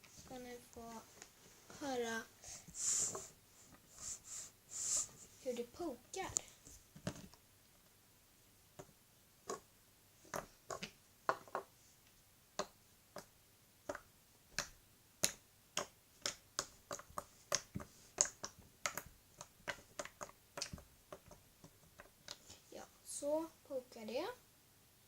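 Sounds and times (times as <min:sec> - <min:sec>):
slime popping when poked: 0:14.6 - 0:21.4.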